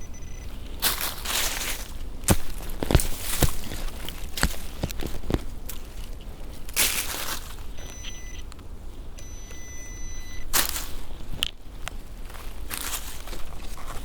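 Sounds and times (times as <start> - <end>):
metal detector beeps: 0.0 - 0.6, 7.8 - 8.4, 9.2 - 10.5
rustling: 0.0 - 14.0.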